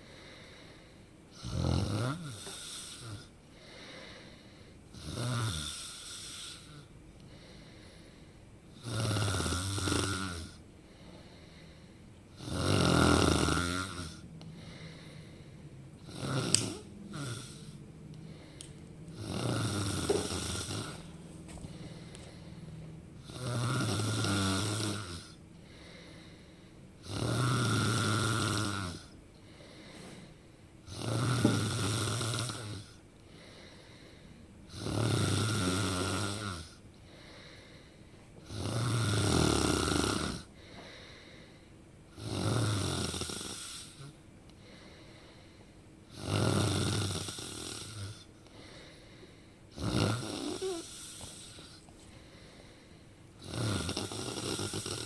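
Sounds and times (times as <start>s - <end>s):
quiet breathing: 0.0s - 55.0s
person snoring loudly: 1.3s - 3.3s, 4.9s - 6.9s, 8.7s - 10.6s, 12.3s - 15.4s, 16.0s - 18.6s, 19.2s - 21.1s, 23.2s - 26.4s, 27.0s - 29.1s, 30.9s - 33.0s, 34.7s - 36.8s, 38.4s - 40.5s, 42.2s - 44.2s, 46.1s - 48.3s, 49.7s - 51.8s, 53.4s - 55.0s.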